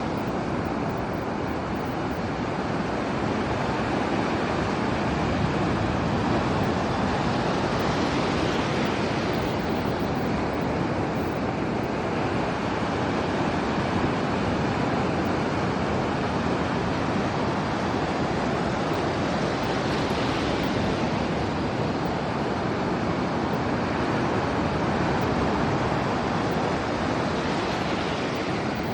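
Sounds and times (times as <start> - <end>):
ocean surf on beach: 0.0 - 28.9
wind on microphone: 0.0 - 28.9.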